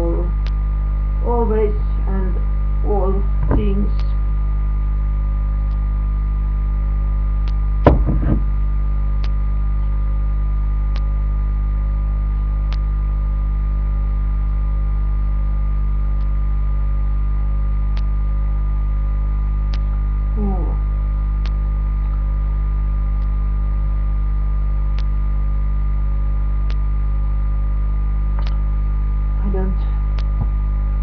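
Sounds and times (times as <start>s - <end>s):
electrical mains hum: 0.0s - 31.0s
loud knock: 7.8s - 8.5s.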